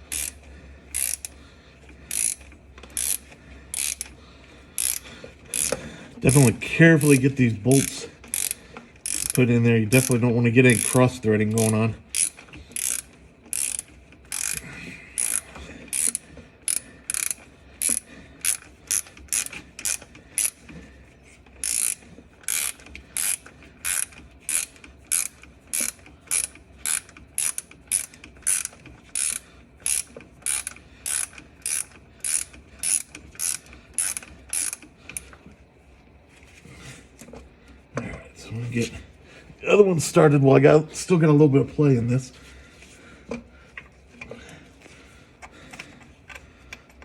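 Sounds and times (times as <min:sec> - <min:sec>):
ratchet wrench clicking: 0:00.0 - 0:14.6, 0:15.2 - 0:20.8, 0:21.5 - 0:35.4.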